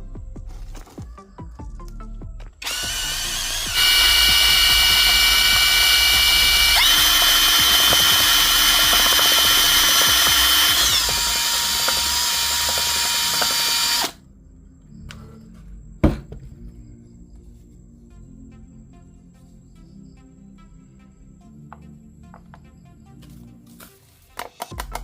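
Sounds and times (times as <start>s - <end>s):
electric drill whining: 2.6s - 14.2s.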